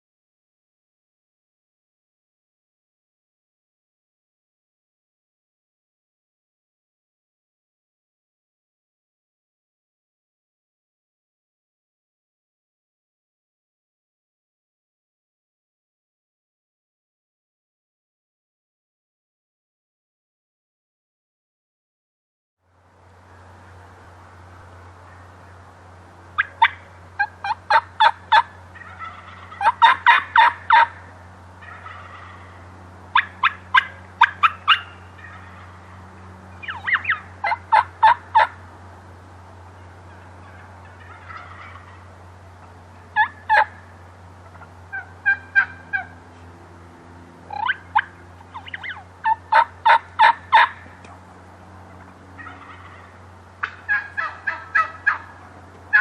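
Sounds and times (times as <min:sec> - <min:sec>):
turkey gobbling: 0:26.4 - 0:36.0, 0:36.6 - 0:38.6, 0:39.8 - 0:46.2, 0:47.5 - 0:51.2, 0:52.0 - 0:56.0.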